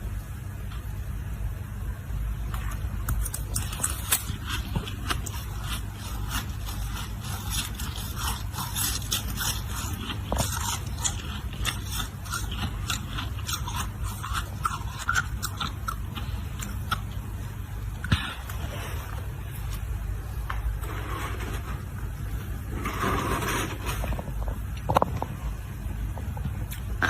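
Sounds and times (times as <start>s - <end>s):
person chewing ice: 2.6s - 19.8s.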